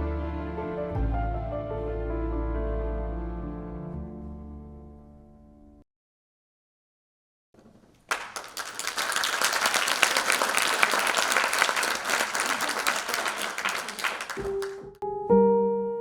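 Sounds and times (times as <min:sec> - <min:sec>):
audience applauding: 0:08.1 - 0:15.0.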